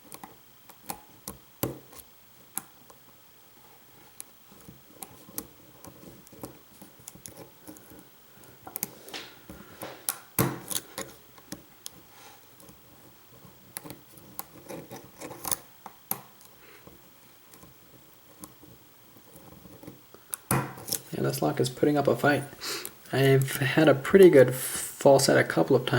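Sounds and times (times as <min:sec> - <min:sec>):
lock pick clicks and scrapes: 0:10.0 - 0:11.6, 0:13.7 - 0:15.7.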